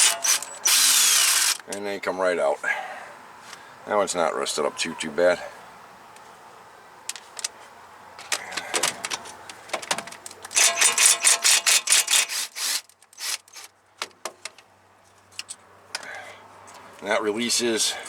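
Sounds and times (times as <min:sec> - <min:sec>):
hand ratchet clicking: 0:00.0 - 0:01.6, 0:10.5 - 0:13.7.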